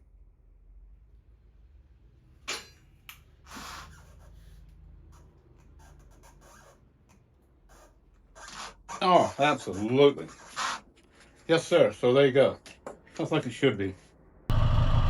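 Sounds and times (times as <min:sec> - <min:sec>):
low steady hum: 0:14.4 - 0:15.0.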